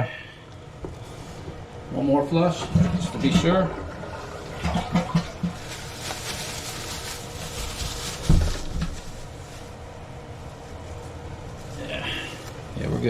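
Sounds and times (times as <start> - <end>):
toilet flushing: 1.9 - 6.1.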